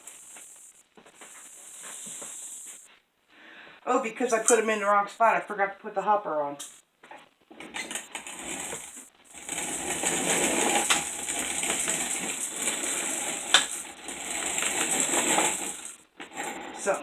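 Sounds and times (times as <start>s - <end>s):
hand grain mill grinding: 0.0s - 2.9s, 7.5s - 17.0s.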